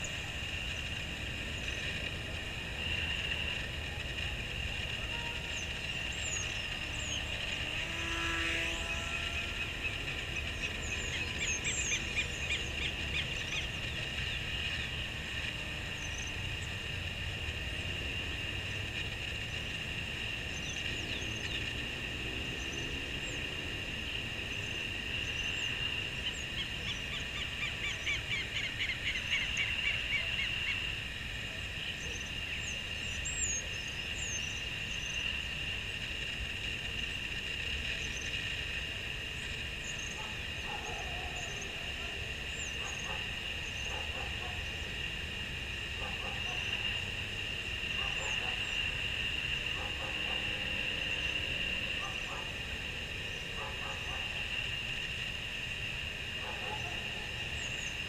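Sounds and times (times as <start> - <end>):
rapid trill of chirps: 0.0 - 31.0.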